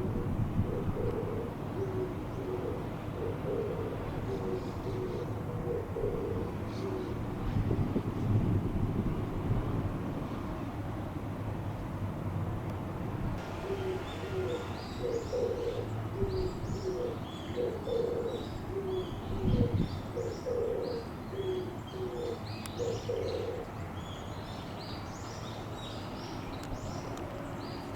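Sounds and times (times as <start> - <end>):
dove cooing: 0.0 - 7.3, 13.6 - 23.8
small birds chirping: 13.8 - 27.9.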